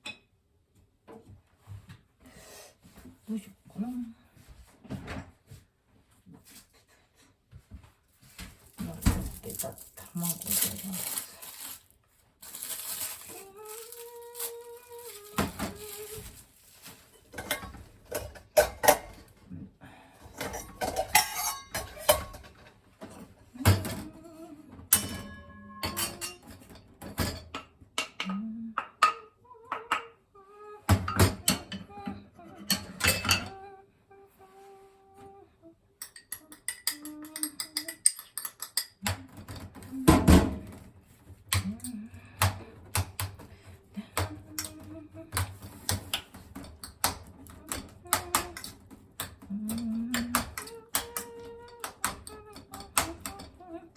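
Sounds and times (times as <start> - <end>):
utensils clinking against dishes: 12.4 - 19.3, 20.2 - 24.2, 24.9 - 28.3, 30.9 - 33.6, 36.0 - 40.7, 45.4 - 53.7.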